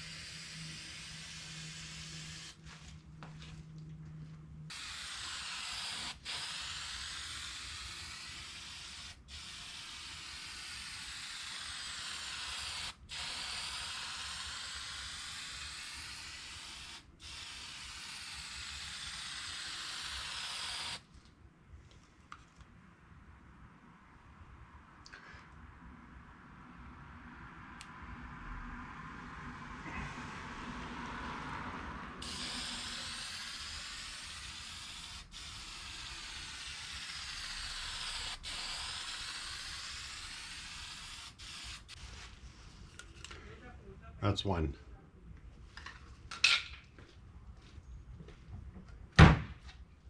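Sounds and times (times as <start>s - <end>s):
aerosol spray can spraying: 0.0s - 2.6s, 4.7s - 21.1s, 32.2s - 42.3s.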